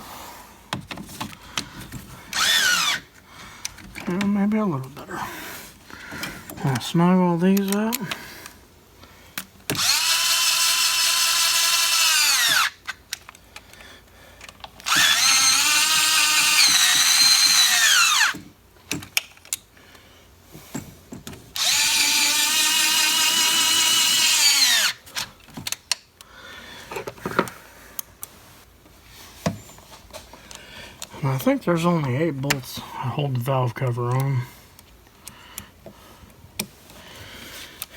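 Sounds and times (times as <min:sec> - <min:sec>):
cordless drill whining: 0:02.3 - 0:03.1, 0:09.7 - 0:12.9, 0:14.8 - 0:18.4, 0:21.6 - 0:25.2.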